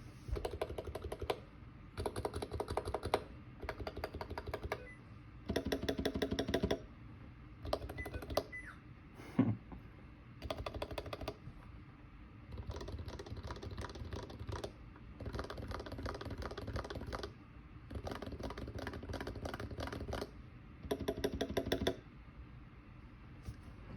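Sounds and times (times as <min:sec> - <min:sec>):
fast keyboard typing: 0:00.4 - 0:01.4, 0:02.0 - 0:04.9, 0:05.5 - 0:06.8, 0:07.6 - 0:08.5, 0:10.4 - 0:11.4, 0:12.5 - 0:22.0.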